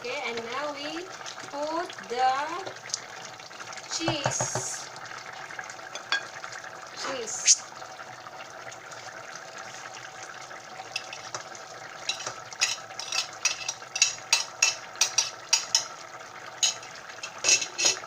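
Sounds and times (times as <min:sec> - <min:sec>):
food sizzling in a pan: 0:00.0 - 0:18.0
utensil scraping against a pan: 0:12.1 - 0:15.9, 0:16.6 - 0:18.0.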